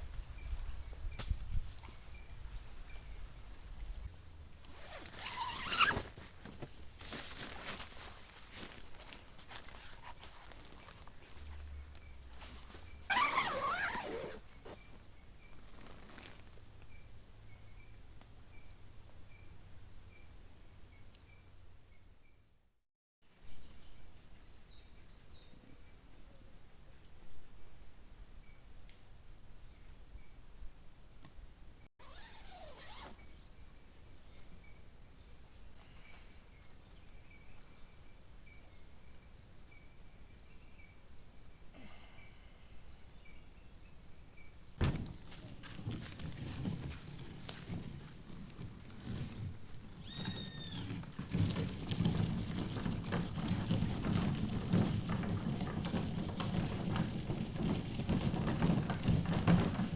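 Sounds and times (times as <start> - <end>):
insects trilling and chirping: 0.0 - 22.6, 23.3 - 59.9
rustling noise: 3.7 - 17.0, 44.8 - 59.9.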